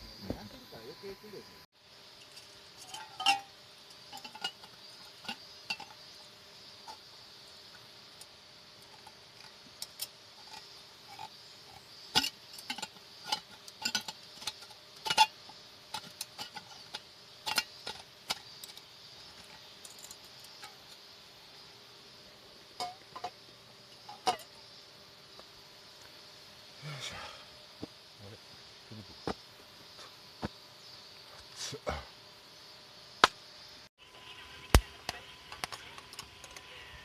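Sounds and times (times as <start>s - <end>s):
high insect drone: 0.0s - 37.0s
cookware clinking: 2.8s - 3.5s.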